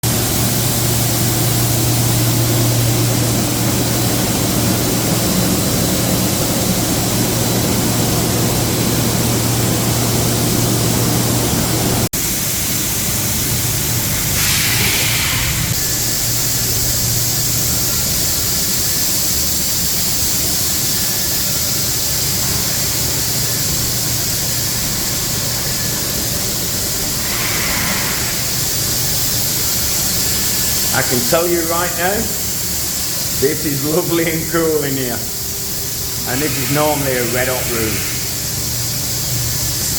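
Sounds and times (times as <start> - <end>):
air conditioning fan humming: 0.0 - 39.9
brief bright hisses: 14.3 - 15.9, 27.1 - 29.1.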